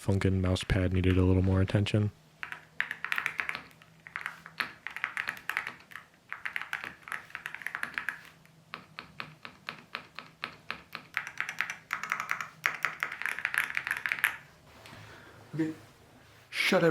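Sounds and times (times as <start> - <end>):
keyboard keystroke clicks: 2.4 - 14.4.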